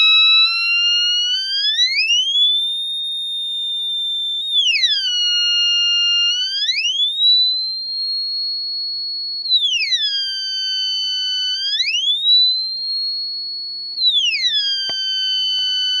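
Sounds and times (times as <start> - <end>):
electronic siren wailing: 0.0 - 2.6.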